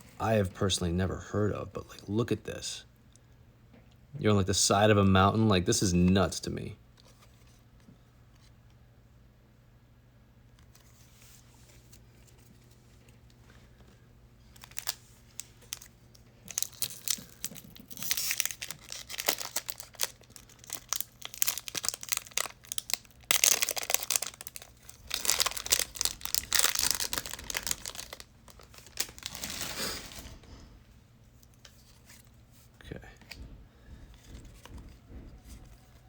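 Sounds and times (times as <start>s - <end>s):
wrapper tearing and crinkling: 14.5s - 15.9s, 16.5s - 30.4s.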